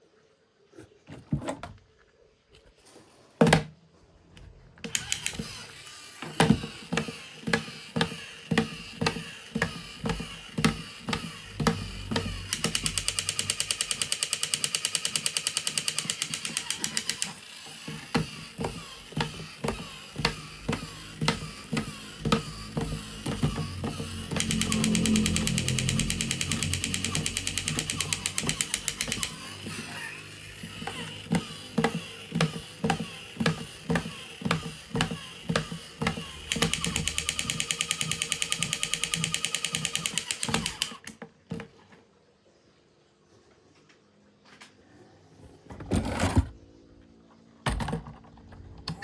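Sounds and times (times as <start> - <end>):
knocks and clicks: 6.2 - 41.2
fast rattling rhythm: 6.6 - 29.8.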